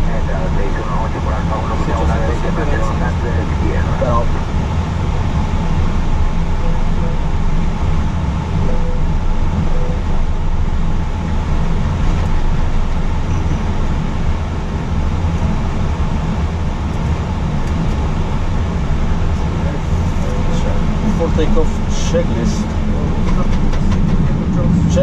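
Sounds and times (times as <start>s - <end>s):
jet engines idling hiss: 0.0s - 5.4s
aircraft cockpit rumble: 0.0s - 25.0s.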